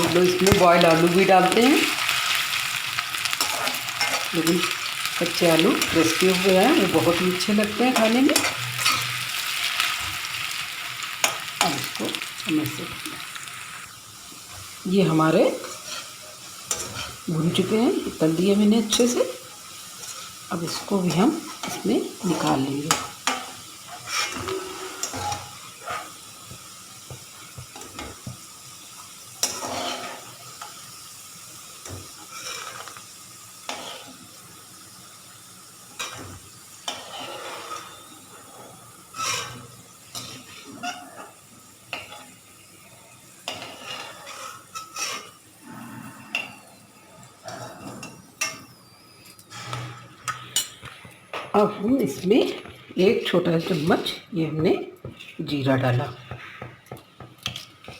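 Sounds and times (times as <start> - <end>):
oil sizzling: 0.0 - 57.9
metal spoon scraping frying pan: 3.3 - 9.6, 15.5 - 26.2, 29.4 - 30.8, 31.8 - 33.0, 36.8 - 38.5, 39.1 - 42.3, 43.5 - 45.4, 49.5 - 50.8.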